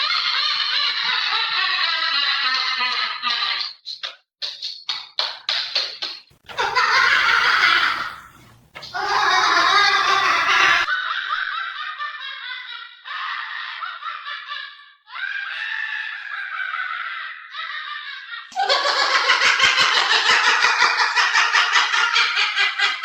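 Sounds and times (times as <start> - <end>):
parrot mimicking laughter: 6.5 - 23.0.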